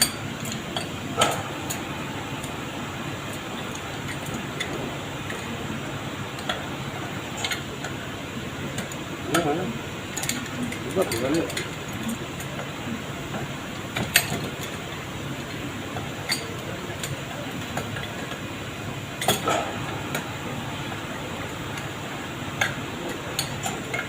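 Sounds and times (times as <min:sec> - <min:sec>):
steady low hum: 0:00.0 - 0:24.0
metal tools clinking on metal parts: 0:10.2 - 0:11.7.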